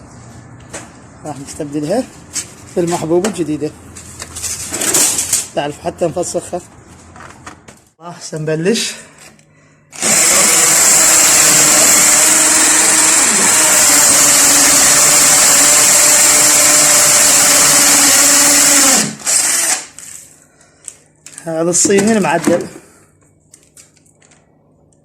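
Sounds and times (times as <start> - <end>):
power drill running: 9.9 - 20.0.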